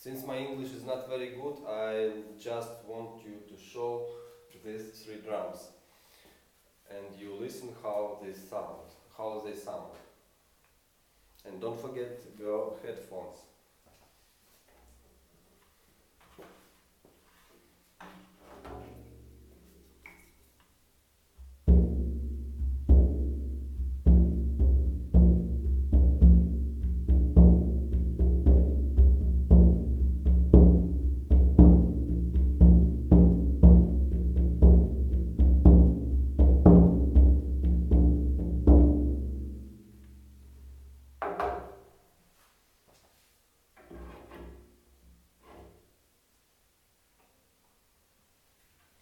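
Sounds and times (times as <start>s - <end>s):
frame drum booming: 21.4s - 41.1s.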